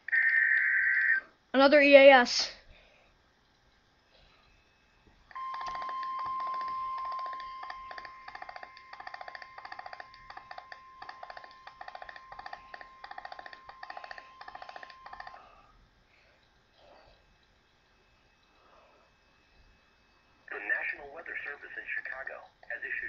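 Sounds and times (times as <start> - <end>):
steady alarm tone: 4.3 - 21.3
rapid beeps in bursts: 4.8 - 15.6.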